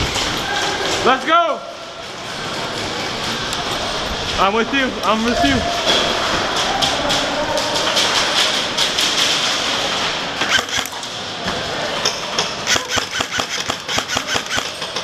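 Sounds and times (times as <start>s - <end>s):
noisy background: 0.0s - 15.0s
airsoft gun shots: 12.7s - 14.8s.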